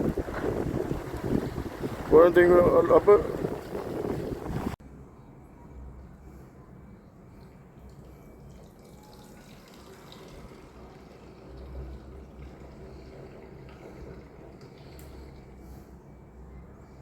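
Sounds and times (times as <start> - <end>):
water splashing and dripping: 0.0 - 4.8
low steady rumble: 0.0 - 8.6.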